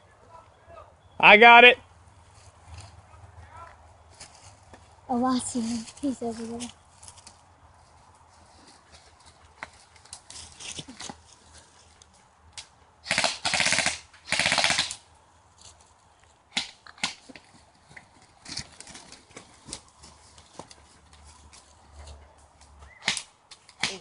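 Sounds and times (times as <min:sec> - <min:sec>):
airsoft rifle automatic bursts: 0:13.0 - 0:15.0.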